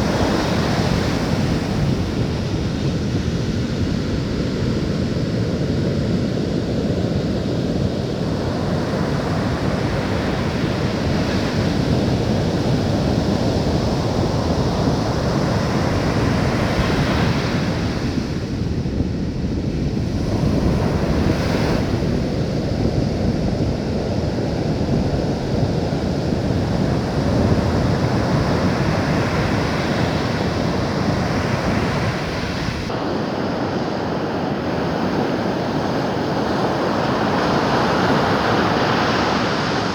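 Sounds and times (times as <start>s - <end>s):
ocean waves rushing: 0.0s - 4.3s, 20.0s - 39.9s
wind rumbling on microphone: 0.0s - 39.9s.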